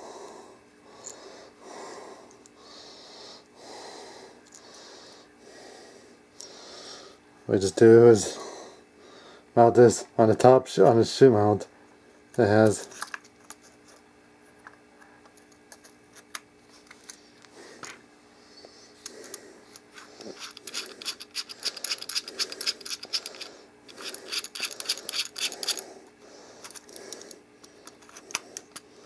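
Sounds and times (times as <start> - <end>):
plastic and metal parts clicking: 20.3 - 25.8.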